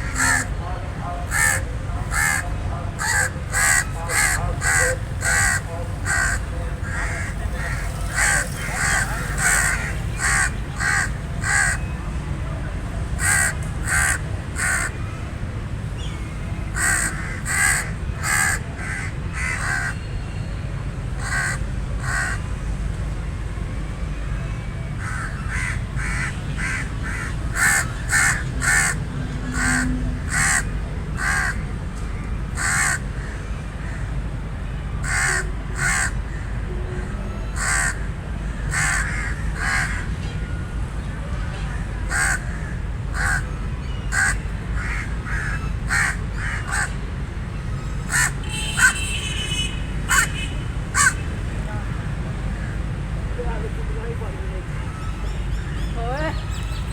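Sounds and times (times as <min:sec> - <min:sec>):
raven cawing: 0:00.0 - 0:00.5, 0:01.3 - 0:11.9, 0:13.2 - 0:15.1, 0:16.7 - 0:20.0, 0:21.2 - 0:22.4, 0:25.0 - 0:31.6, 0:32.6 - 0:34.1, 0:35.0 - 0:36.6, 0:37.6 - 0:40.2, 0:41.7 - 0:43.5, 0:44.1 - 0:47.0, 0:48.0 - 0:51.3, 0:52.5 - 0:52.9.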